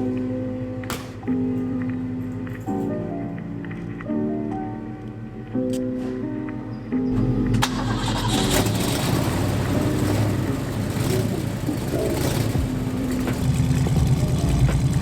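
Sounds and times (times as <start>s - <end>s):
background music: 0.0s - 15.0s
car engine starting and running: 7.2s - 15.0s.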